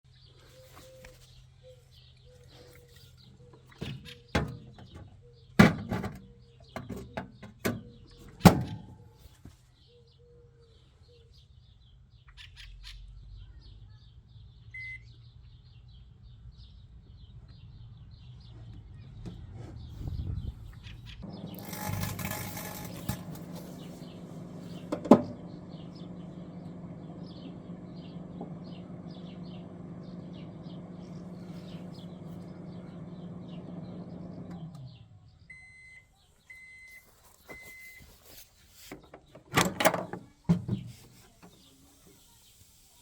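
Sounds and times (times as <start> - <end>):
small birds chirping: 0.1 - 21.8, 22.9 - 39.5, 40.1 - 43.0
microwave door clunks: 5.6 - 6.2, 6.8 - 9.0, 24.9 - 25.5, 39.4 - 40.9.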